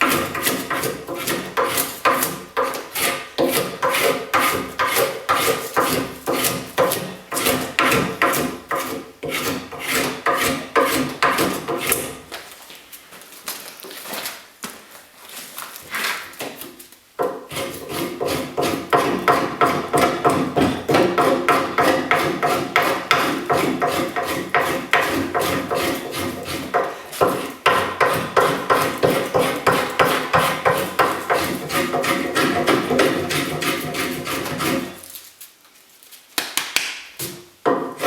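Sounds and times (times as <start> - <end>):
scraping strokes on wood: 0.0 - 12.2, 17.2 - 35.2, 37.2 - 38.0.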